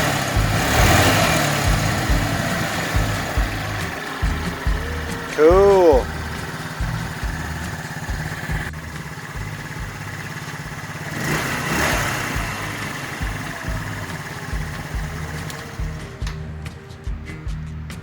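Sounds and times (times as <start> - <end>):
scooter engine idling: 0.0 - 16.6.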